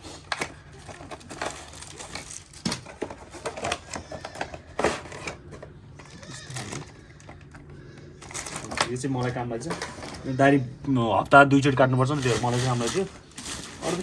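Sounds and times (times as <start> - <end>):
packaging clicks and rustles: 0.0 - 10.4, 12.0 - 14.0.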